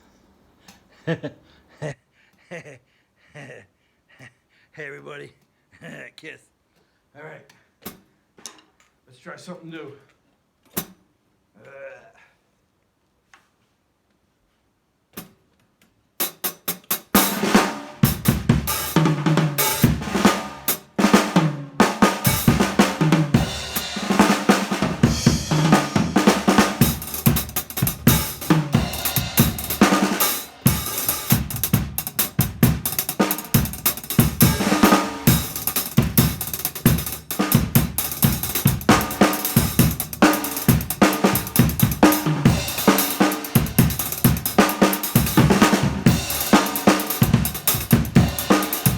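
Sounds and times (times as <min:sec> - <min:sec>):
drum kit beat: 0:16.2 - 0:48.9
ringing cymbals: 0:25.0 - 0:31.7.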